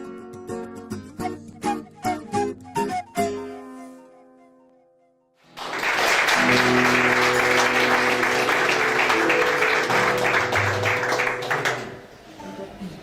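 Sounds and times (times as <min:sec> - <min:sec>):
applause: 0:05.5 - 0:12.1.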